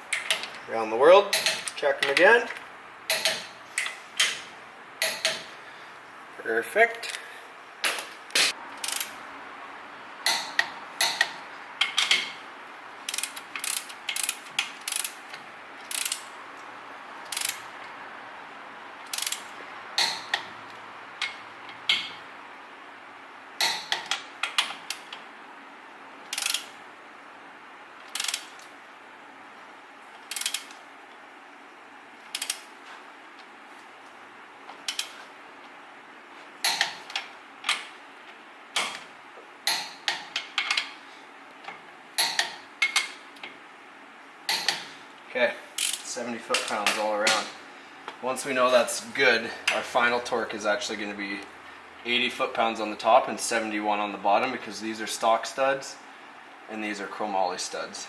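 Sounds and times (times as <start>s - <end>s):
torque wrench clicking: 8.3s - 9.2s, 13.1s - 15.2s, 15.9s - 16.3s, 17.2s - 17.6s, 19.0s - 20.4s, 26.3s - 26.7s, 28.1s - 28.7s, 30.2s - 30.8s, 32.3s - 32.7s, 34.9s - 35.2s, 45.8s - 46.1s.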